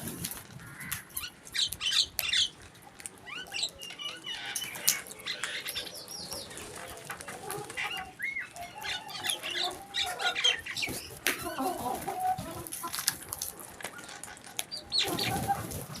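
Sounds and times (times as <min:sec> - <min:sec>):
crows cawing: 0:00.5 - 0:01.3.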